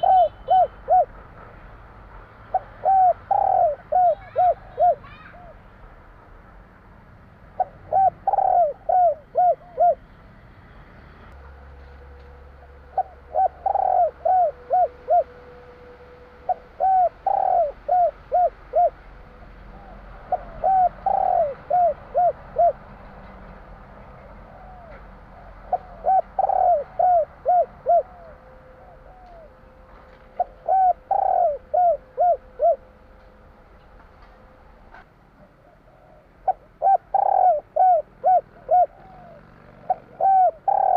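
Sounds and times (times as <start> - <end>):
dove cooing: 0.0 - 1.2, 2.5 - 5.6, 7.6 - 10.1, 12.6 - 15.7, 16.4 - 32.9, 35.4 - 40.9.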